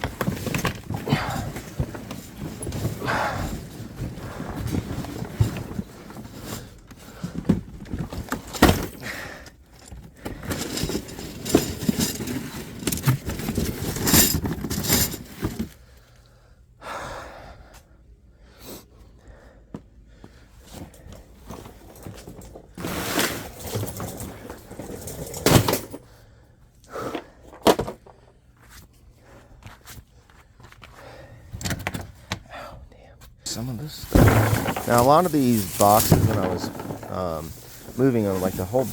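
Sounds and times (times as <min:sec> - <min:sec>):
items knocking and thumping: 0:00.0 - 0:15.7, 0:21.4 - 0:26.0, 0:27.2 - 0:28.2, 0:33.6 - 0:38.9
bags rustling: 0:00.0 - 0:15.8, 0:21.3 - 0:26.0, 0:33.5 - 0:38.9.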